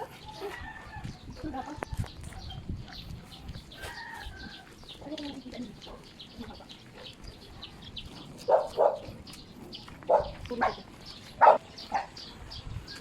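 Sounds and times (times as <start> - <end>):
dog barking: 8.5 - 9.2, 10.1 - 12.2.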